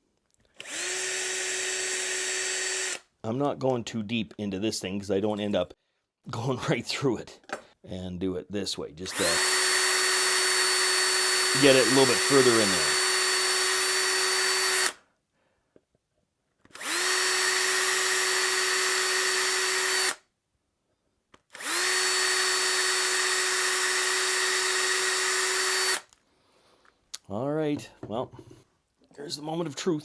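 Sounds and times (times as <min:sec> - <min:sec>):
cordless drill whining: 0:00.6 - 0:03.1, 0:09.0 - 0:15.0, 0:16.7 - 0:20.2, 0:21.4 - 0:26.2.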